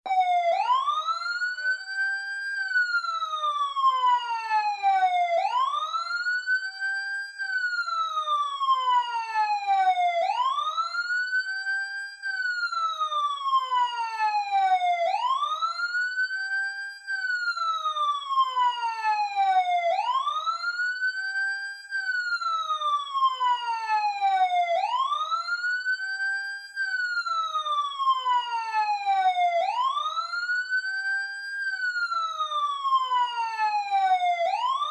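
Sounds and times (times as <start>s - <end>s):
emergency vehicle siren wailing: 0.0s - 34.9s.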